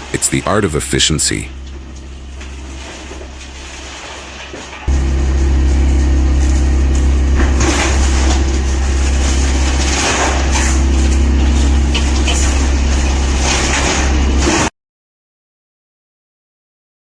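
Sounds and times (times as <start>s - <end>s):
wood chipper droning: 0.0s - 14.7s
wood crunching and shredding: 1.0s - 14.7s.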